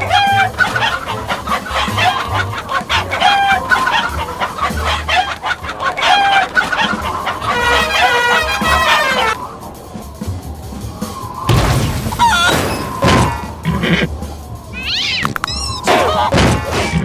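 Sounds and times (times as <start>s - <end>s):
cartoon chicken clucking: 0.0s - 9.4s, 13.4s - 17.0s
chicken squawk: 0.0s - 9.6s, 12.1s - 17.0s.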